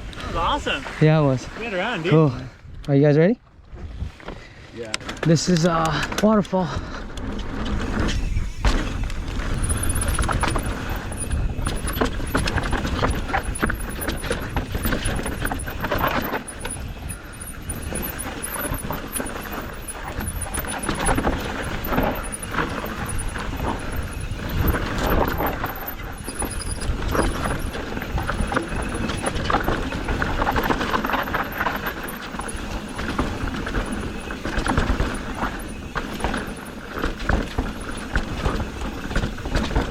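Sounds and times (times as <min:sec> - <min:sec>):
bike rattling over bumps: 0:03.4 - 0:39.9
tyres crunching over dirt and rocks: 0:04.1 - 0:39.9
wind on microphone: 0:06.8 - 0:36.4.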